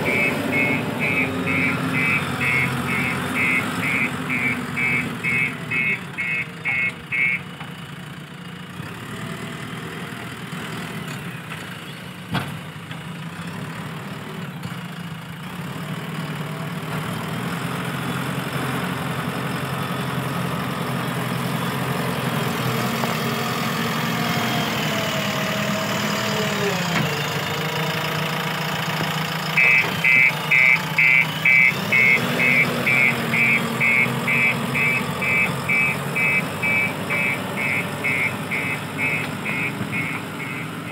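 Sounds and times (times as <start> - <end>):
reversing alarm beeps: 0.0 - 7.4, 29.6 - 40.9
diesel engine running: 0.0 - 40.9.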